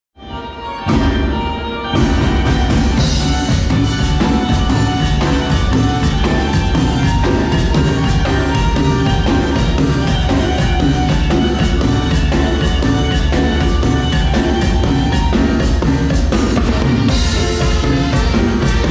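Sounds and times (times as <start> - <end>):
live band playing: 0.2 - 18.9
drum kit beat: 0.9 - 18.9.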